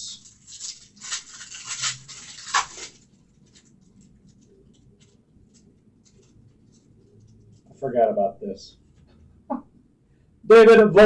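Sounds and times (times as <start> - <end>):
trading cards rustling: 0.1 - 7.4.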